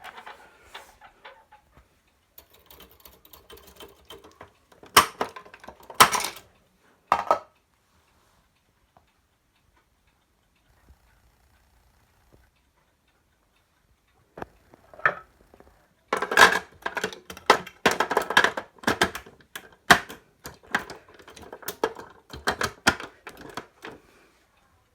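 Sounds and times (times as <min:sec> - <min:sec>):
typewriter key clacks: 0:02.4 - 0:06.4, 0:16.2 - 0:24.0.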